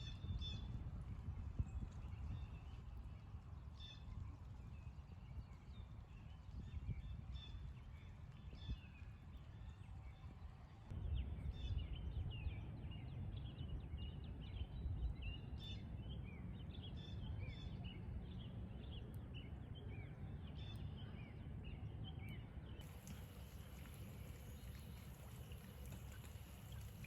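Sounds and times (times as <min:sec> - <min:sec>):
low outdoor rumble: 0:10.4 - 0:27.0
small birds chirping: 0:12.9 - 0:27.0.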